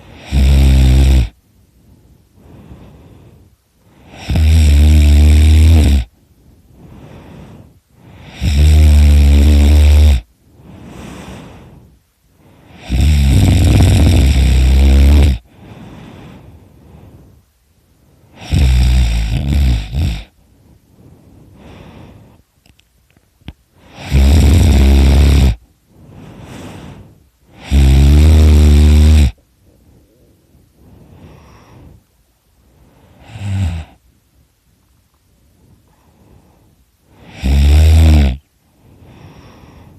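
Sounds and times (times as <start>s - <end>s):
man snoring loudly: 0.0s - 1.4s, 4.0s - 6.1s, 8.2s - 10.3s, 12.7s - 15.5s, 18.4s - 20.4s, 23.9s - 25.6s, 27.5s - 29.4s, 33.2s - 34.0s, 37.1s - 38.5s
faint breathing: 0.0s - 4.5s, 5.4s - 22.9s, 23.7s - 37.8s, 38.4s - 39.9s.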